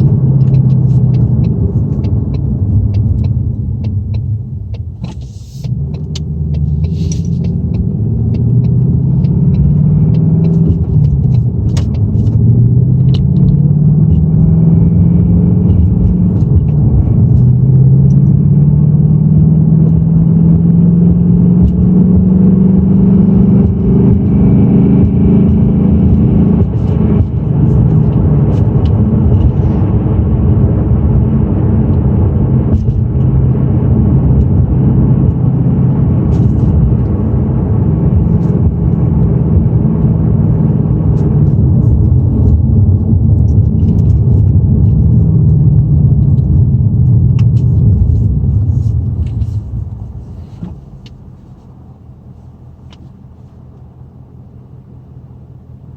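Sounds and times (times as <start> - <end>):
car engine running: 0.0 - 55.9
engine rattle: 23.5 - 55.9.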